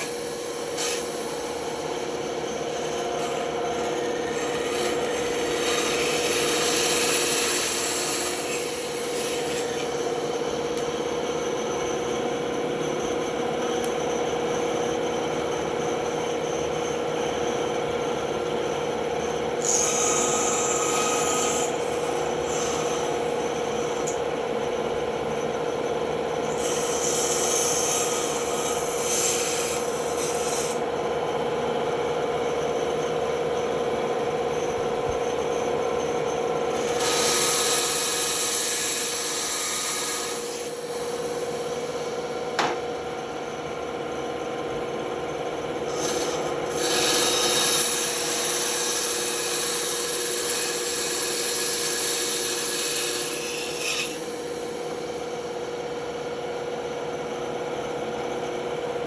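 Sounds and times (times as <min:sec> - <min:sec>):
band saw cutting wood: 0:00.0 - 0:12.2, 0:19.5 - 0:24.2, 0:26.4 - 0:30.8, 0:36.7 - 0:42.8, 0:45.9 - 0:55.0.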